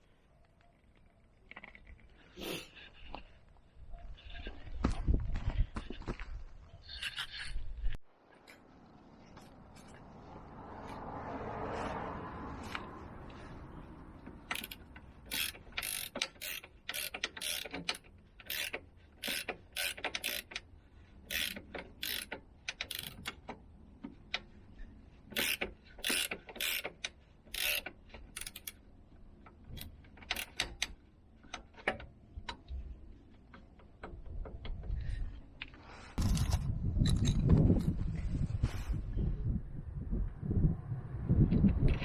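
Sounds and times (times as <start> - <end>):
ratchet wrench clicking: 14.2 - 23.5, 25.3 - 28.8, 29.7 - 31.0.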